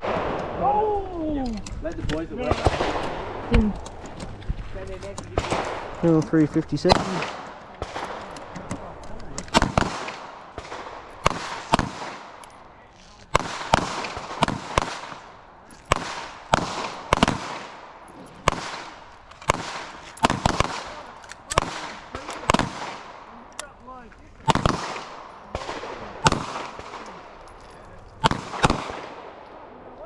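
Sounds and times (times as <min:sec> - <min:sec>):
handgun shots: 0:05.1 - 0:12.6, 0:24.4 - 0:27.2.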